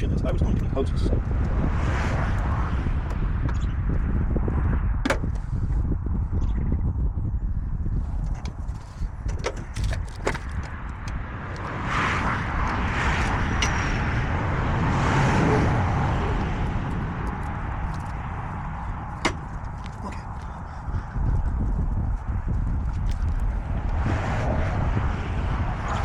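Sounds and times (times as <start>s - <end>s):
low rumble: 0.0s - 26.0s
vehicle passing by: 10.8s - 20.4s, 21.7s - 26.0s.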